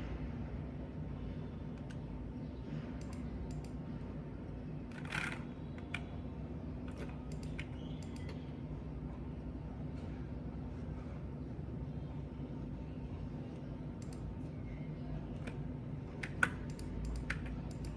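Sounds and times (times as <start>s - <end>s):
low room hum: 0.0s - 17.9s
computer keyboard keystrokes: 6.9s - 8.4s, 16.2s - 17.9s.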